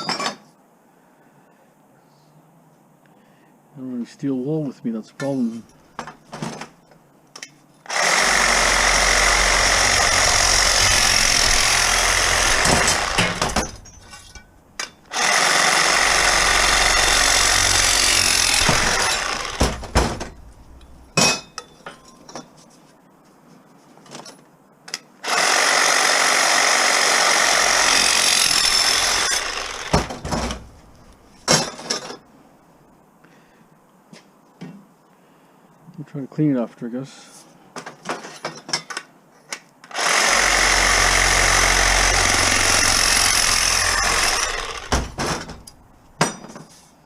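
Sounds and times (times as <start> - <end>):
handheld power tool running: 7.9 - 13.8, 15.1 - 20.2, 25.2 - 30.8, 39.9 - 45.5
metal knocking and clattering: 12.5 - 15.0, 18.6 - 22.5, 29.9 - 30.9, 44.8 - 46.7.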